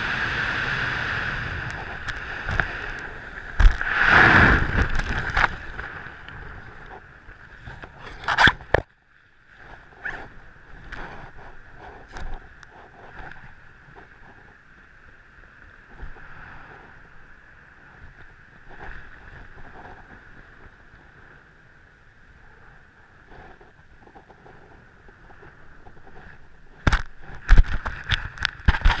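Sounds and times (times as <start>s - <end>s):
camera rubbing against clothing: 7.6s - 8.8s, 9.7s - 14.5s, 23.2s - 29.0s.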